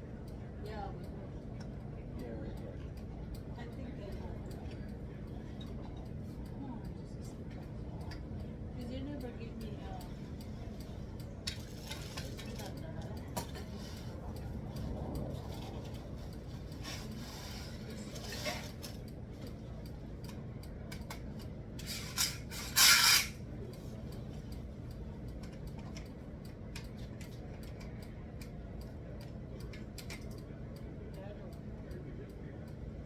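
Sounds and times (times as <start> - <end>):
parts rubbing and scraping: 21.8 - 23.4.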